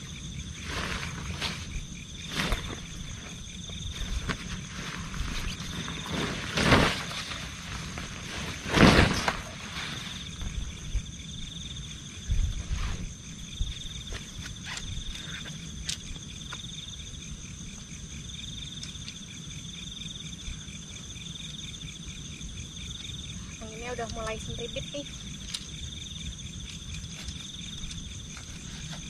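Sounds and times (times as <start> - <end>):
insects chirring: 0.0 - 29.0
loud short rustling: 0.5 - 10.8.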